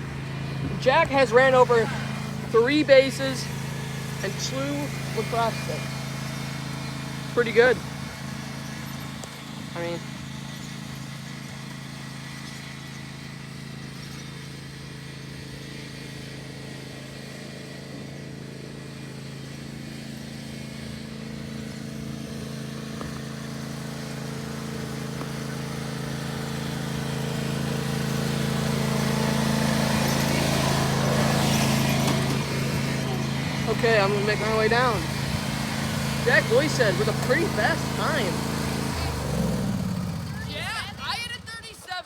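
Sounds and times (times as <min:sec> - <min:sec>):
riding lawn mower engine: 0:00.0 - 0:42.0.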